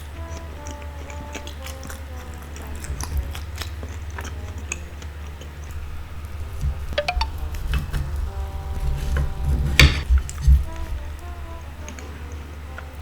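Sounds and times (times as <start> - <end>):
sticky clicks of rice: 0.0 - 5.8
light background music: 0.0 - 13.0.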